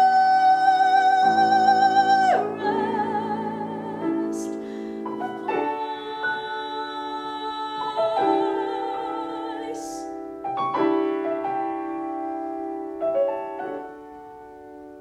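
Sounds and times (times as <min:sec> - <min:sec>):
woman singing with vibrato: 0:00.0 - 0:10.3
piano chords: 0:00.0 - 0:15.0.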